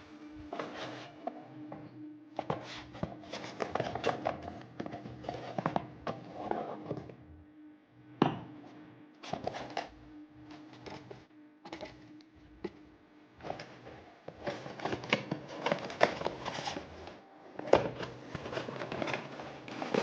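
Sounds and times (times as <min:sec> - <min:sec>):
utensils clicking and clattering: 0:17.6 - 0:20.0.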